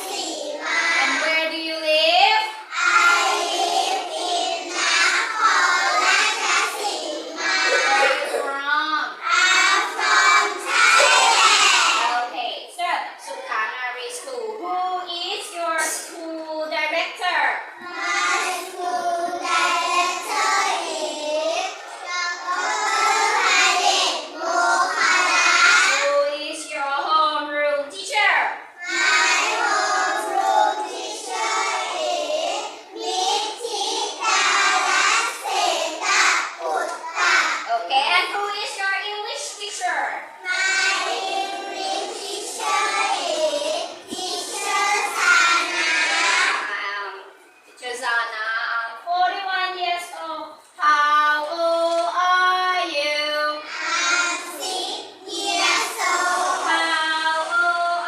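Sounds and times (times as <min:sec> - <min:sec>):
children chanting in unison: 0:00.0 - 0:01.2, 0:02.6 - 0:08.4, 0:09.1 - 0:12.1, 0:17.8 - 0:26.0, 0:28.8 - 0:37.7, 0:40.4 - 0:46.6, 0:53.6 - 0:58.0
child singing: 0:28.8 - 0:37.7, 0:40.4 - 0:46.7, 0:50.8 - 0:58.0.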